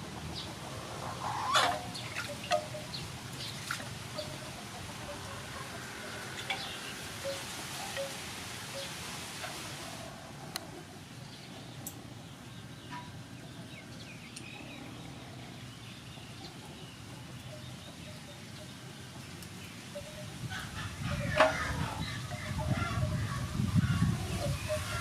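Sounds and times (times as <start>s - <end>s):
chickens clucking: 0.0s - 11.0s, 19.9s - 25.0s.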